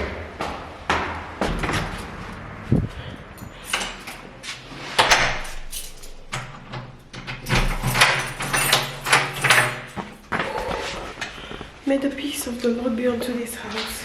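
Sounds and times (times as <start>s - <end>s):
door opening and closing: 0.9s - 11.2s.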